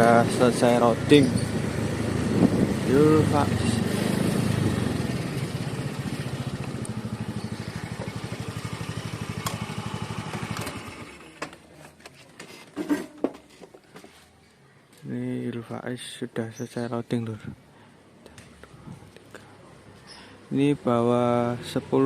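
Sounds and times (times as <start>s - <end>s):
motorcycle engine running: 0.0s - 11.4s.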